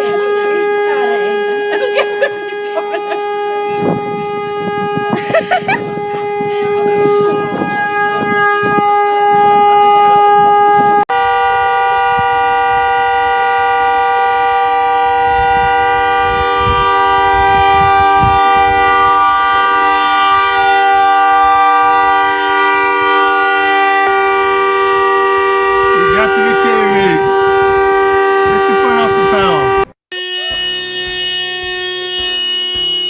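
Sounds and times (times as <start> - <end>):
car horn long blast: 0.0 - 33.0
two-tone horn blaring: 0.0 - 33.0.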